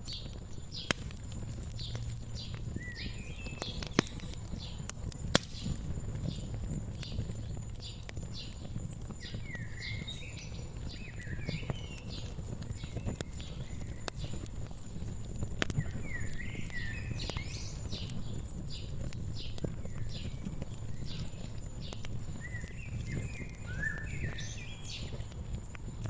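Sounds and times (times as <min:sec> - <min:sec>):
wood fire crackling: 0:00.0 - 0:26.0
songbird chirping: 0:00.1 - 0:25.3.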